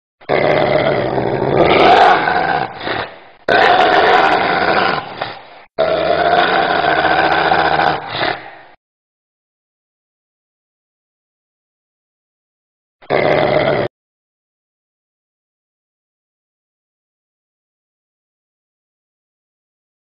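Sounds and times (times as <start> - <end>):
dog snarling and growling: 0.2 - 8.7, 13.0 - 13.9.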